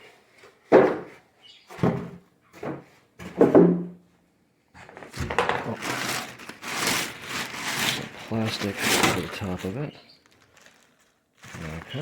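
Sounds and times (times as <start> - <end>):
styrofoam knocks and scrapes: 5.0 - 9.8
rustle of packing material: 5.2 - 12.0
styrofoam squeak: 5.7 - 12.0.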